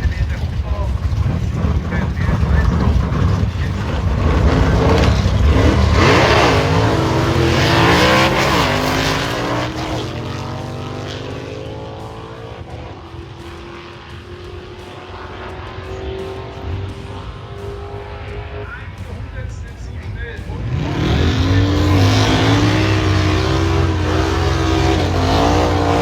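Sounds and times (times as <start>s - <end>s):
drag race car engine accelerating: 0.0s - 26.0s.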